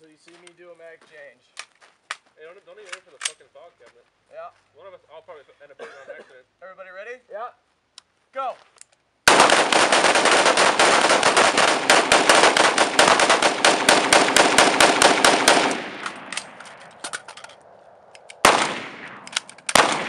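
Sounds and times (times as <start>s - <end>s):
rifles firing: 9.3s - 17.6s, 18.2s - 20.0s.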